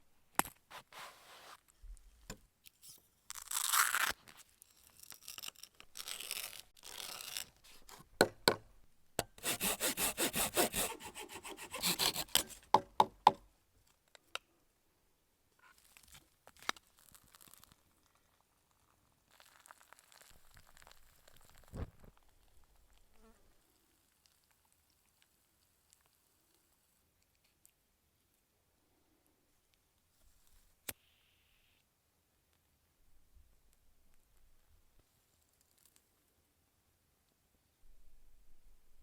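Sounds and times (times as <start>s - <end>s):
sawing strokes: 9.4s - 12.8s
hand tool rasping wood: 9.4s - 13.4s.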